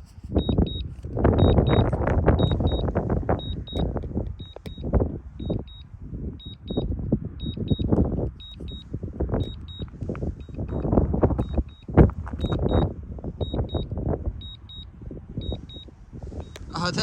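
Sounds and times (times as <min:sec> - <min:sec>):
wind buffeting microphone: 0:00.0 - 0:17.0
controller double beeps: 0:00.4 - 0:02.8.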